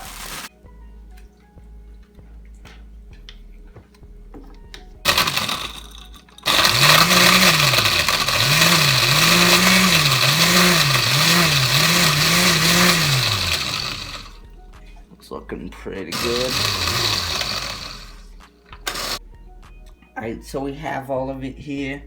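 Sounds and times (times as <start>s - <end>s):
blender crushing ice: 0.0s - 0.5s, 5.1s - 14.4s, 16.1s - 19.2s.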